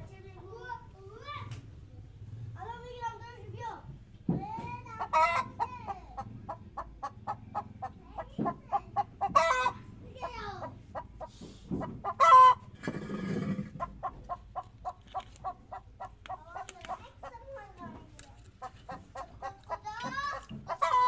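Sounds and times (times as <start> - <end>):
hen clucking and squawking: 4.9 - 17.8, 18.5 - 21.0.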